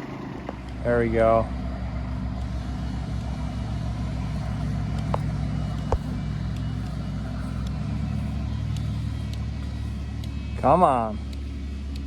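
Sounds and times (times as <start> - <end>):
tractor engine under load: 0.0 - 12.0.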